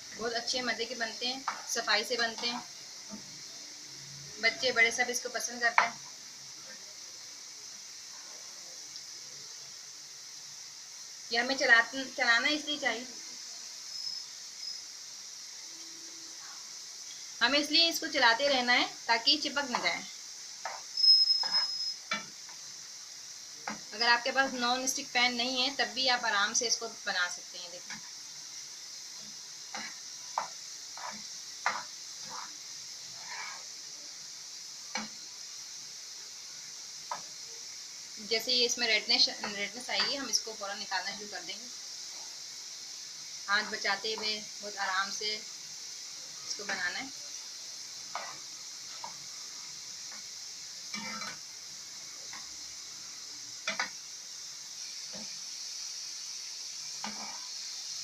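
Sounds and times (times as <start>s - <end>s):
fries sizzling in hot oil: 0.0s - 58.0s
utensil scraping a pan: 20.6s - 22.3s, 29.7s - 33.8s, 48.2s - 49.2s, 50.9s - 51.4s, 57.0s - 57.6s
utensil scraping and knocking pan: 29.8s - 32.5s.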